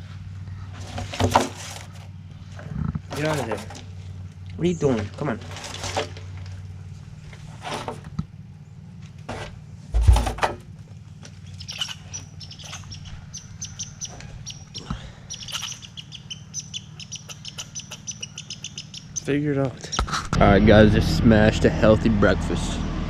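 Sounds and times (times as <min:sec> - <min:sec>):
rustling: 0:00.0 - 0:08.2
steady low hum: 0:00.0 - 0:23.0
bird chirping rapidly: 0:11.4 - 0:20.3.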